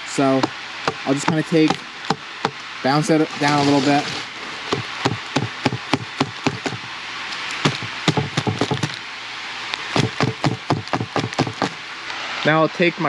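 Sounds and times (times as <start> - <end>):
seed tray knocking on hard surface: 7.7 - 8.9.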